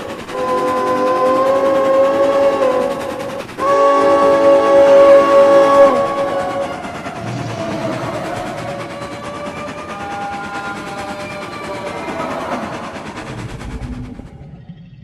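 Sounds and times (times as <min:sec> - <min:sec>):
train whistle blasts: 0:00.0 - 0:13.4
rhythmic rail clatter: 0:00.0 - 0:14.8.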